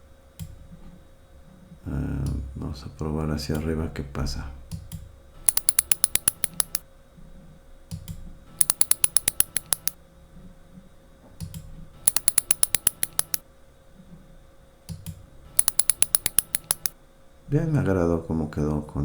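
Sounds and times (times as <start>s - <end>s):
wooden ratchet rattle clacking: 5.5s - 6.8s, 8.6s - 10.0s, 12.1s - 13.4s, 15.6s - 16.9s.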